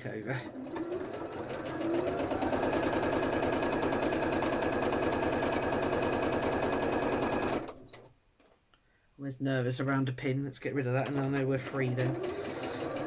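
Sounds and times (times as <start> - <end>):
sewing machine running: 0.3 - 7.8, 11.6 - 13.0.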